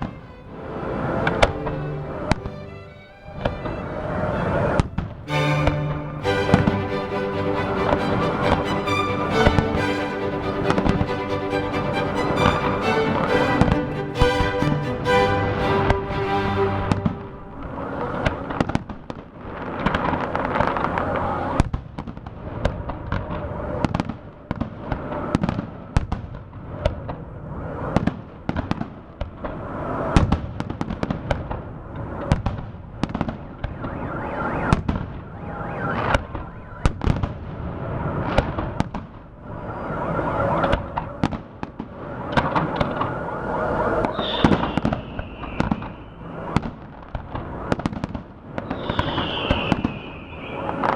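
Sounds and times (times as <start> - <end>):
descending firework whistle: 44.1 - 46.4, 48.6 - 50.9.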